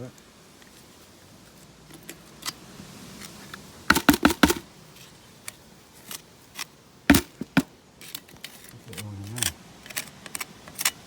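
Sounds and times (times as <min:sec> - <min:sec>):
metal tool knocking on iron: 0:03.9 - 0:04.6, 0:07.1 - 0:07.7.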